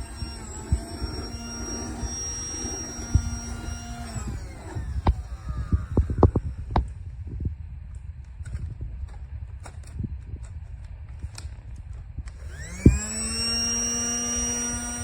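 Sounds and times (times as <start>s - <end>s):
toy vacuum motor whirring: 0.0s - 6.8s, 12.3s - 15.0s.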